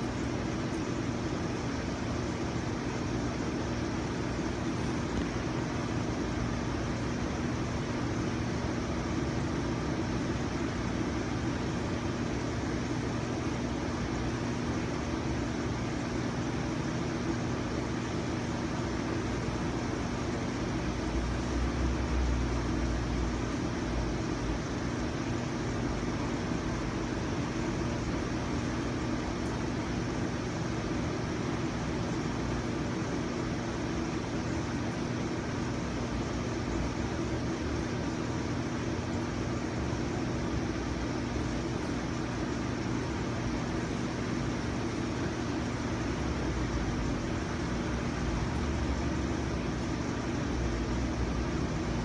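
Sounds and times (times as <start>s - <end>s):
mechanical hum: 0.0s - 52.0s.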